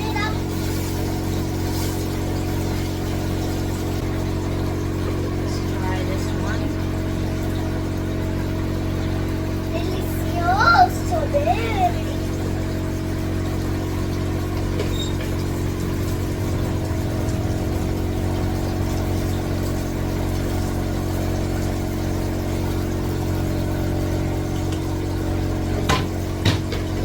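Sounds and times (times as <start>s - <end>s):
low machine hum: 0.0s - 27.0s
sharp knocks: 25.8s - 27.0s.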